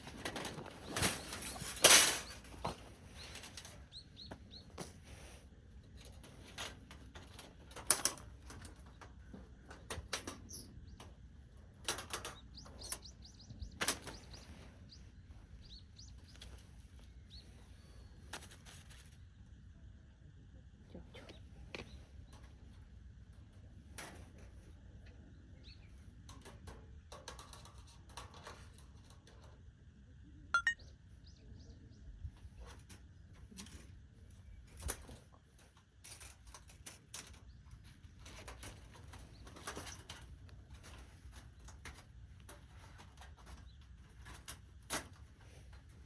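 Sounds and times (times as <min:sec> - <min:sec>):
short rising chirp: 0:30.6 - 0:30.8.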